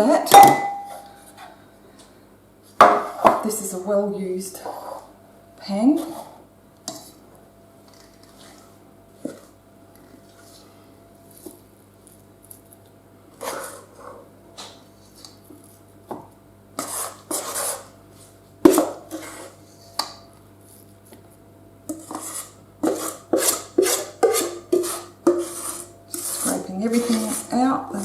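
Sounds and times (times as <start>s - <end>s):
utensil scraping cake batter: 7.8s - 12.2s, 13.3s - 14.3s, 16.8s - 20.0s, 21.9s - 28.0s.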